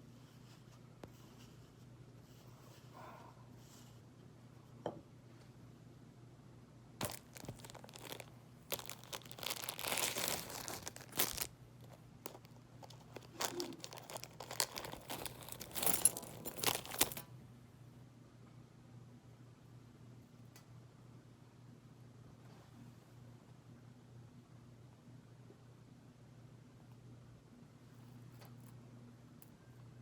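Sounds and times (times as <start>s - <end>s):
faint steady hum: 0.0s - 30.0s
plastic or paper crinkling: 7.0s - 17.2s.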